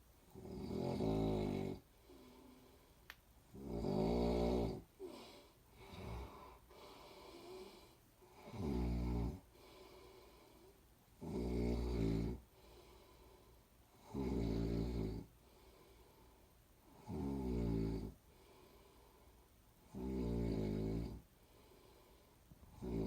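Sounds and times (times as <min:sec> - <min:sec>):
person snoring loudly: 0:00.3 - 0:01.8, 0:03.5 - 0:06.5, 0:08.4 - 0:09.4, 0:11.2 - 0:12.4, 0:14.0 - 0:15.3, 0:17.0 - 0:18.2, 0:19.9 - 0:21.2, 0:22.7 - 0:23.0
soft breathing: 0:01.8 - 0:03.2, 0:04.8 - 0:08.5, 0:09.3 - 0:11.0, 0:12.4 - 0:14.0, 0:15.2 - 0:17.0, 0:18.0 - 0:19.9, 0:21.0 - 0:23.0.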